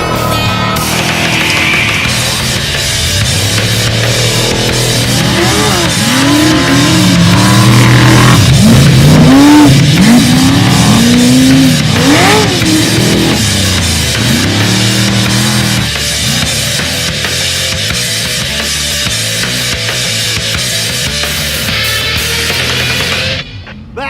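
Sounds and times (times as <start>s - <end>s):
heavy metal music: 0.0s - 24.0s
race vehicle engines revving: 0.0s - 24.0s.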